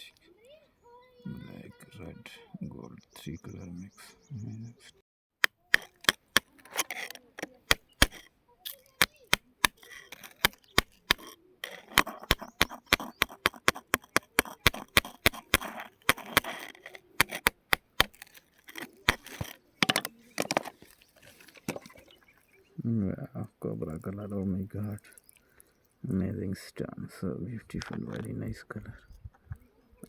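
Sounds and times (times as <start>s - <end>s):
hard stone being struck: 5.4s - 22.1s.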